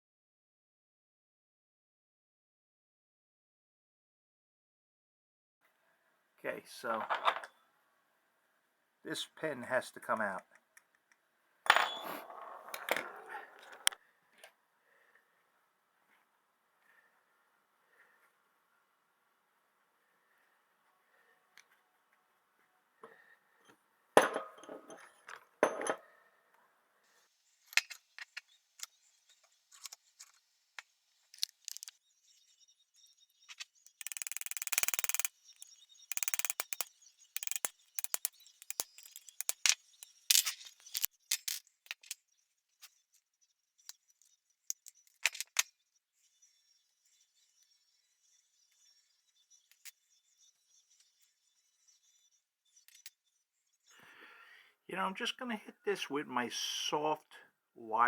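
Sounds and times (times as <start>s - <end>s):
metal tools clicking and clinking: 31.4s - 32.0s, 33.9s - 42.2s.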